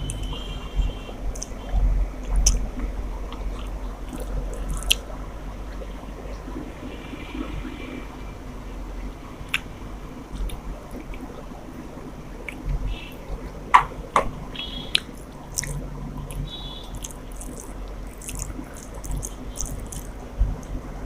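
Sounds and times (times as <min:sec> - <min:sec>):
chewing and wet squishing: 0:00.0 - 0:07.6, 0:10.3 - 0:11.4, 0:12.4 - 0:12.9, 0:14.6 - 0:20.8.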